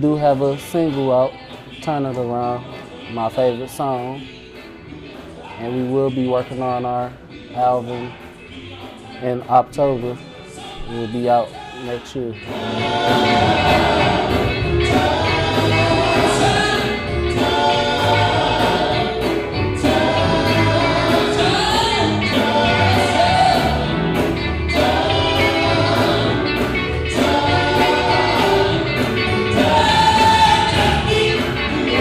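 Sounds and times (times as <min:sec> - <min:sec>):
gospel choir singing: 0:10.2 - 0:32.0
band with bass and drums: 0:12.4 - 0:32.0.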